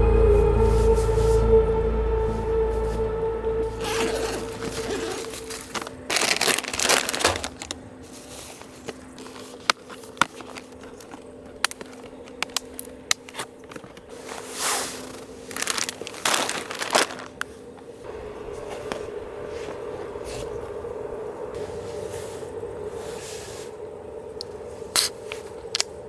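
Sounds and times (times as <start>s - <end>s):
crinkling and rustling: 3.6s - 20.8s.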